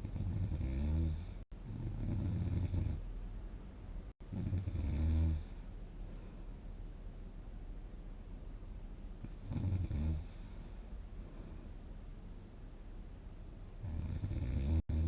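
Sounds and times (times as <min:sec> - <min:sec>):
person snoring: 0:09.4 - 0:10.6, 0:13.8 - 0:15.0.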